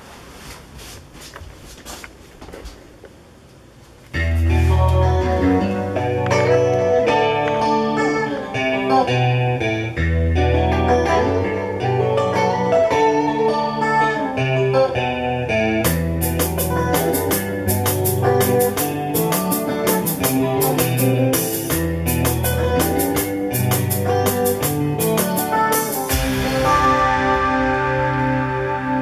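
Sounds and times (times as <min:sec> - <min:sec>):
drums steady beat: 0:15.9 - 0:29.0.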